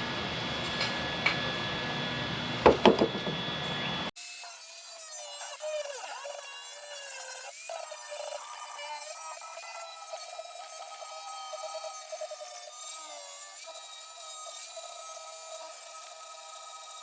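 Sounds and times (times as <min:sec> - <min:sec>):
power grinder whining: 0:04.1 - 0:17.0.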